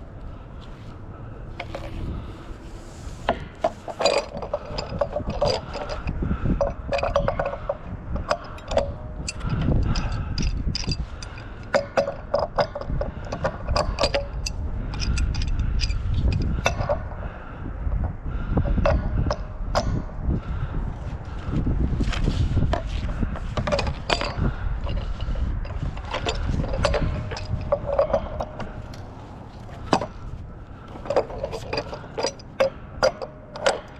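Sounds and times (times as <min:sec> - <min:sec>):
steady low rumble: 0:00.0 - 0:33.9
scrap metal clinking and rattling: 0:03.2 - 0:17.1, 0:22.0 - 0:33.9.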